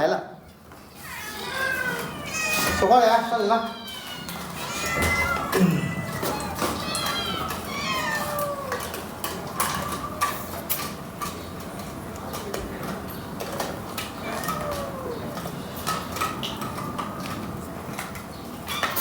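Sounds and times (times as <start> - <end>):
cats meowing: 0.8 - 11.0, 13.8 - 17.3, 18.6 - 19.0.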